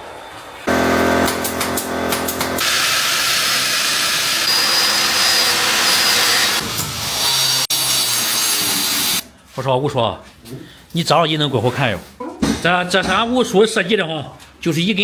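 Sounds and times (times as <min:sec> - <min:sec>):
power tool whirring: 0:00.7 - 0:09.2.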